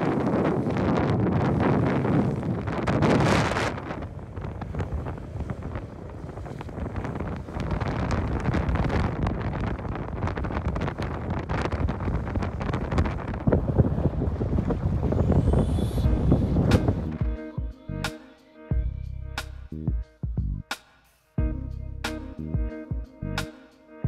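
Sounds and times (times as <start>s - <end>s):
lake waves washing in: 0.0s - 17.1s
gusty wind buffeting microphone: 0.0s - 17.4s.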